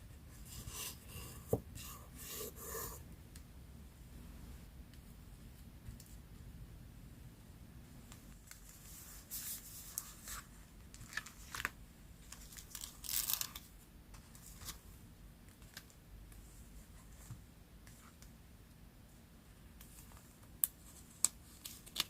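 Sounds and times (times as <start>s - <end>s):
paper rustling and tearing: 12.4s - 13.7s.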